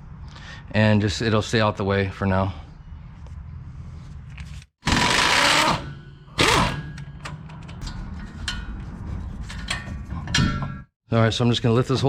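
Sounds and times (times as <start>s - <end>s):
impact wrench running: 4.8s - 7.1s.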